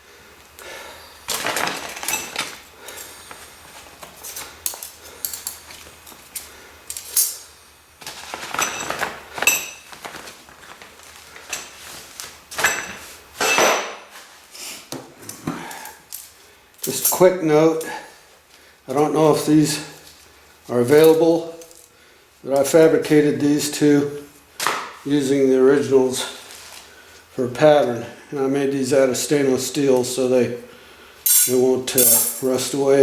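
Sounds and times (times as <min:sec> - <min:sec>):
metal parts clinking: 0:06.9 - 0:07.4, 0:31.3 - 0:32.6.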